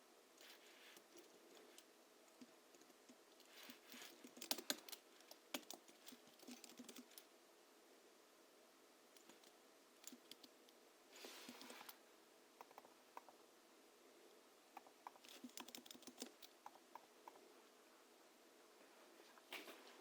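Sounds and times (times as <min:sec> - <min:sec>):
keyboard typing: 0:02.4 - 0:07.2, 0:12.6 - 0:13.4, 0:14.8 - 0:17.4
rustling noise: 0:11.1 - 0:12.0.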